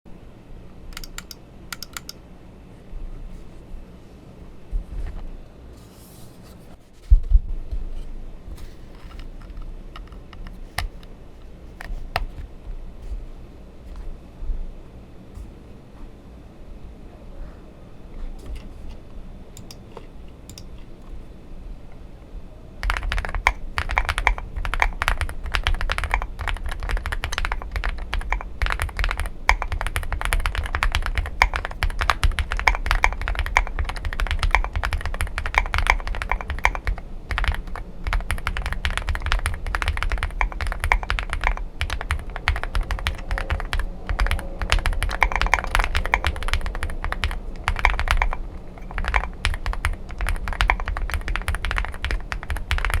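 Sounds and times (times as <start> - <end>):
fast mechanical keyboard typing: 1.0 - 2.2, 10.0 - 11.0, 22.8 - 53.0.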